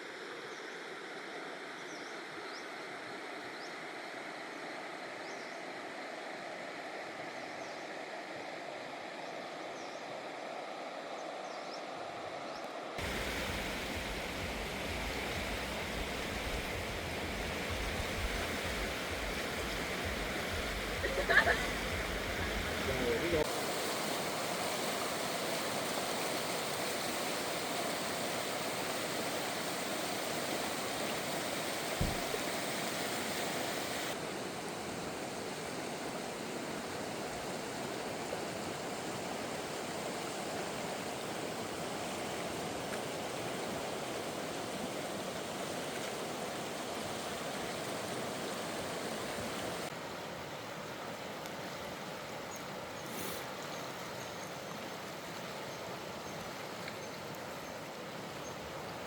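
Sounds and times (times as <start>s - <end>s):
stream water rushing: 0.0s - 59.0s
low thump: 32.0s - 32.3s.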